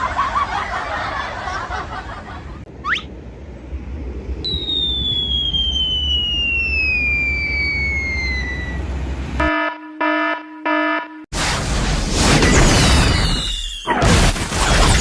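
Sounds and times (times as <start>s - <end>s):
falling whistle: 2.8s - 3.1s, 4.4s - 8.9s, 12.9s - 13.9s
multi-tone horn honks: 9.4s - 11.3s.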